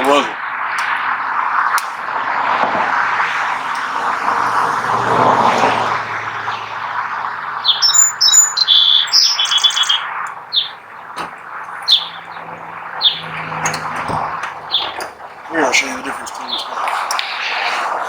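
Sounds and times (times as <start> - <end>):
broad rushing noise: 0.0 - 9.2, 9.9 - 18.0
small birds chirping: 0.0 - 18.0.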